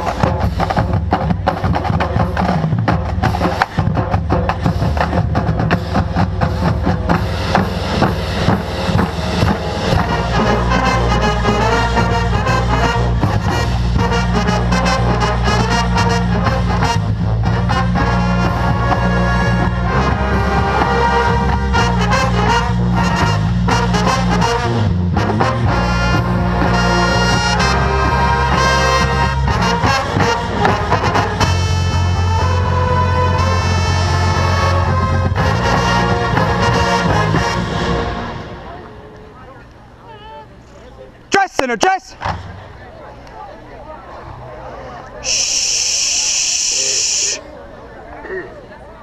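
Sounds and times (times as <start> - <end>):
drumline beating: 0.0 - 39.0
sustained low brass notes: 0.0 - 39.9
brass section playing tune: 1.5 - 39.0.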